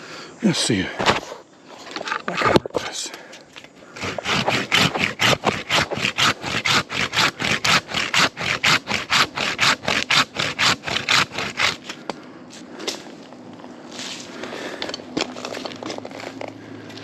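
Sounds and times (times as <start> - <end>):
hand saw cutting a branch: 3.8 - 12.2.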